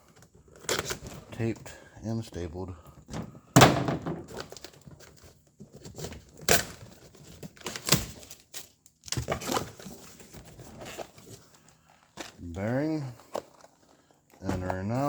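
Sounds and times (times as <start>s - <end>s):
cardboard scraping and crinkling: 4.2s - 15.0s
tape tearing: 4.4s - 11.4s.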